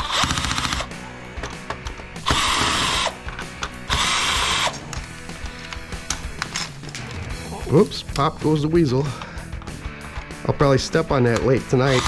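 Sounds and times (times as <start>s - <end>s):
cordless drill running: 0.0s - 1.0s, 2.2s - 3.3s, 3.9s - 4.9s
background music: 0.0s - 12.0s.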